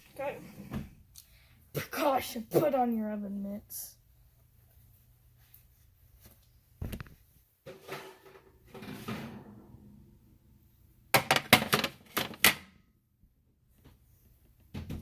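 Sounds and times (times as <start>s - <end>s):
pan scraping: 7.6s - 10.0s.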